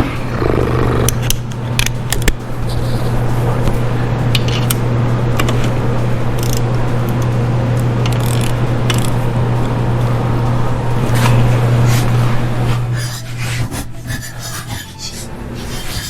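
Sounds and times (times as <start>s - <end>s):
loud steady low hum: 0.0s - 16.0s
hand ratchet clicking: 6.4s - 6.6s, 8.0s - 9.2s.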